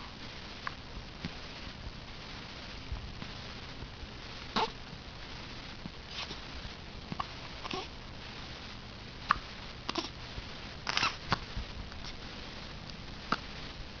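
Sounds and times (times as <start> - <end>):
baby hiccuping: 4.6 - 4.8, 9.3 - 10.1, 10.9 - 11.4.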